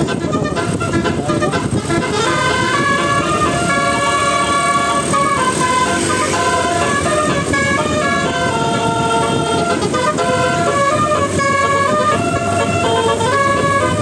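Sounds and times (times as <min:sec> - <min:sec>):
bus horn playing a tune: 0:00.0 - 0:14.0.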